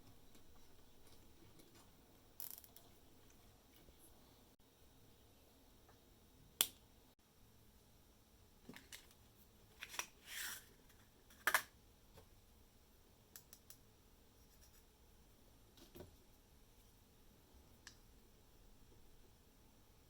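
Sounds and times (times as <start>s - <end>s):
short scrape: 10.2s - 10.7s.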